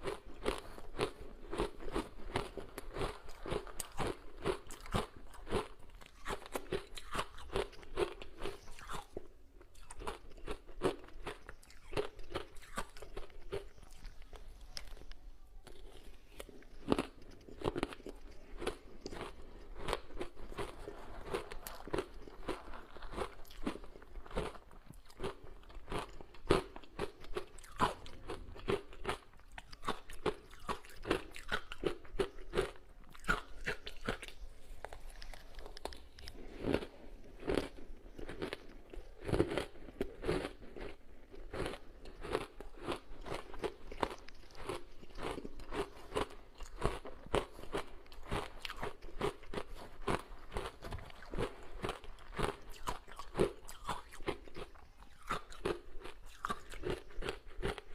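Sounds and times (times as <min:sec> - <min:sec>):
ice being crunched and chewed: 0:00.0 - 0:57.9.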